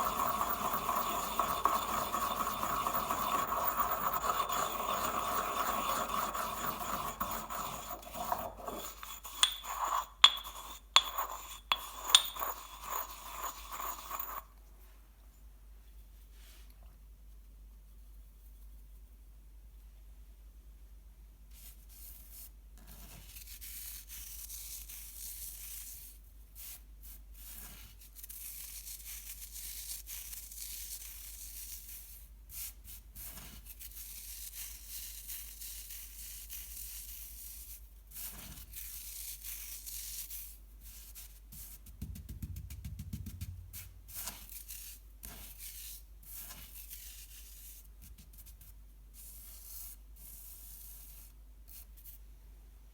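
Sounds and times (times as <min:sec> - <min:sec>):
heavy thumps: 0:41.8 - 0:44.1.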